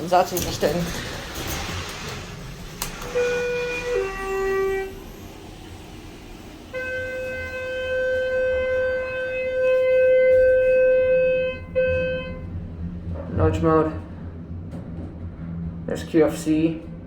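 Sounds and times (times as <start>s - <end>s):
elevator door buzzer tone: 0.4s - 5.9s, 6.6s - 13.0s.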